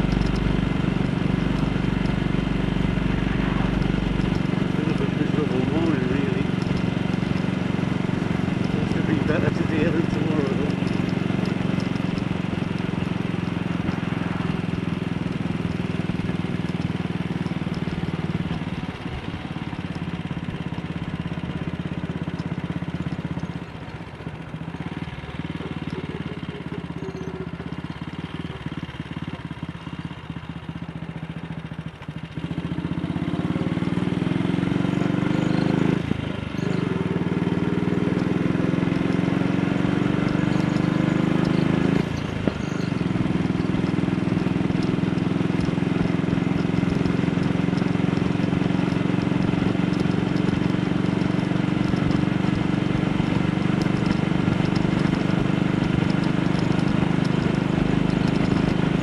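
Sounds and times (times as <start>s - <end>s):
motorcycle engine running: 0.0s - 59.0s.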